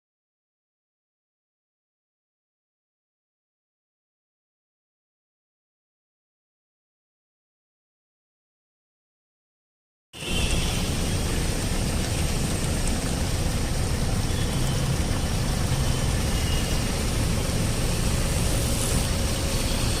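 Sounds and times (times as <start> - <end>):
rushing hiss: 10.2 - 20.0
vehicle engines rumbling: 10.2 - 20.0.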